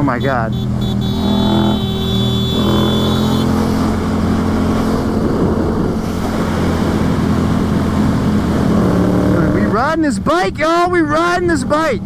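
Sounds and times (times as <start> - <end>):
motorcycle engine running: 0.0 - 11.1
wind rushing over microphone: 2.5 - 9.9.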